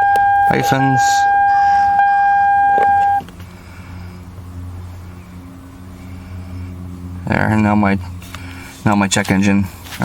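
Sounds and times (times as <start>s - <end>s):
car electronic warning tone: 0.0s - 3.3s
low hum: 0.0s - 8.7s.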